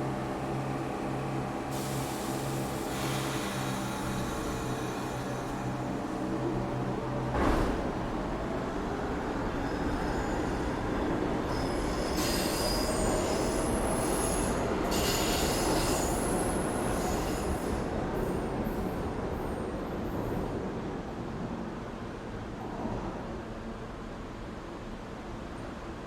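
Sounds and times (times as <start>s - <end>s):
train rumbling on rails: 0.0s - 26.0s
thump: 7.3s - 8.0s.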